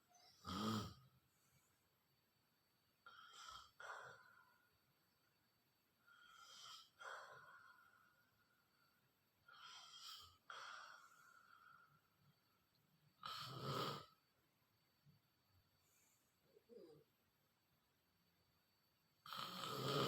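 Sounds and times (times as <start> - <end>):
person snoring with whistle: 19.3 - 20.0.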